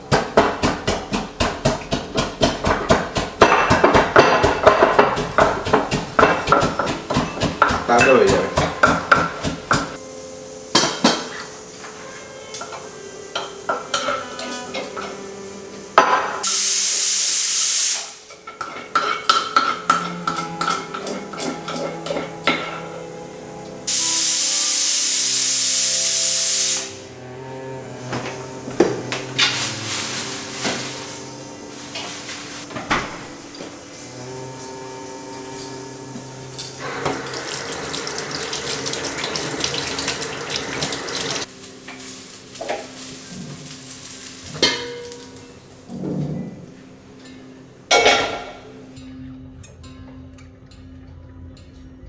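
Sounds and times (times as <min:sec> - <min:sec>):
pipe knock: 0:00.1 - 0:10.0
utensil tapping against a pot: 0:00.1 - 0:10.0
loud steady hiss: 0:09.8 - 0:19.9, 0:20.5 - 0:27.2, 0:28.0 - 0:45.9
tap running into sink: 0:36.8 - 0:41.5.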